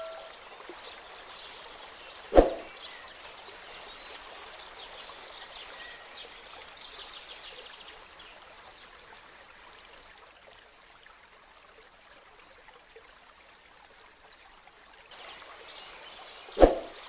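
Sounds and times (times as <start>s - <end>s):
faint high chirps: 0.0s - 1.0s
steady rushing noise: 2.3s - 2.7s, 16.6s - 17.0s.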